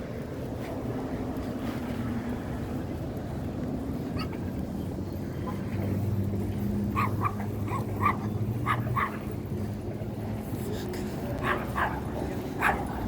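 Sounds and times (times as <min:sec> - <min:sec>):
dog yapping: 0:07.0 - 0:09.2.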